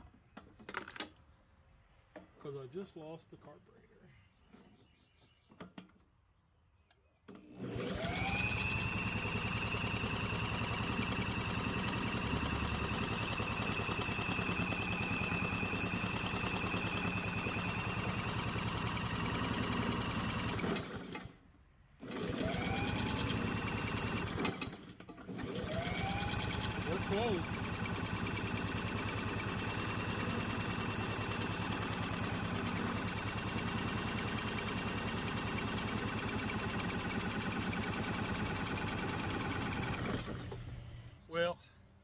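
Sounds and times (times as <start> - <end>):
starter motor whine: 7.3 - 21.4, 22.0 - 40.9
engine chugging while cranked: 7.6 - 21.3, 22.0 - 40.7.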